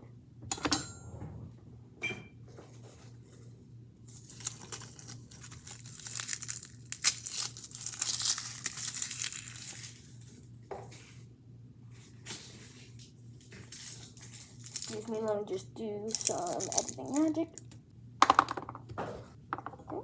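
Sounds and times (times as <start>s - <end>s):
wrapping crinkling and tearing: 4.1s - 10.4s, 13.4s - 17.8s.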